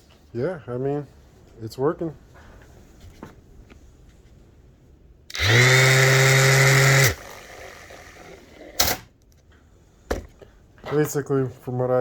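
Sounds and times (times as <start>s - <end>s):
palm sander motor running: 5.3s - 8.8s.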